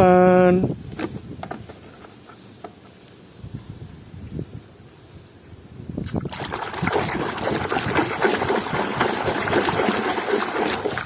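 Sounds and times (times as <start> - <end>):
water splashing over toy vehicles: 6.0 - 11.0.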